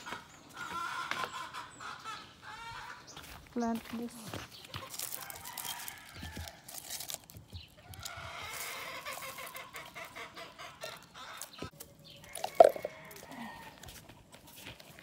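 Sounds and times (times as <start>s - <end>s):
chickens clucking: 0.0s - 3.4s, 7.5s - 15.0s.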